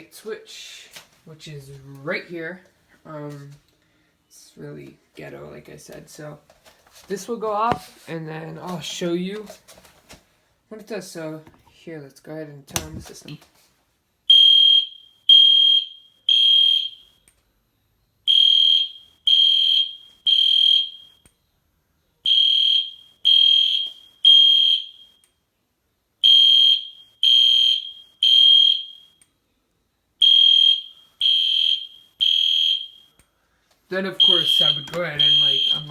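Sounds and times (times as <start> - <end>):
loud high electronic alarm beeps: 14.3 - 17.1, 18.3 - 21.1, 22.3 - 25.2, 26.2 - 29.2, 30.2 - 33.1, 34.2 - 35.9.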